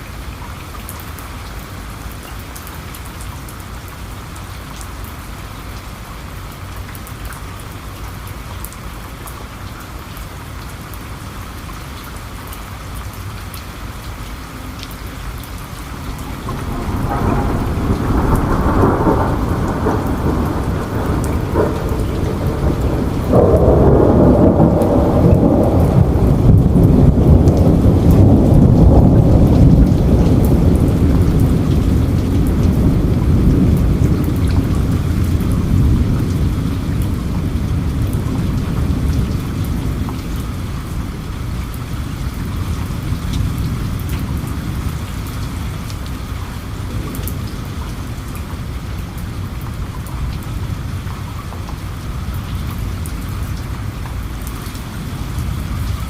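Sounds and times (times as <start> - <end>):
steady rain: 0.0 - 56.0
raindrops ticking: 0.4 - 56.0
thunder rumbling: 14.2 - 56.0.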